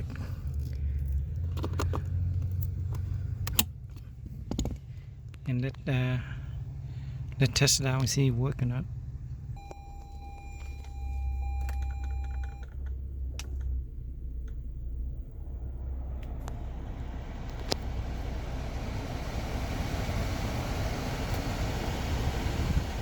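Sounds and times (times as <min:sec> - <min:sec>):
low rumble: 0:00.0 - 0:23.0
clicks: 0:09.6 - 0:13.8
blower fan rush of air: 0:15.3 - 0:23.0.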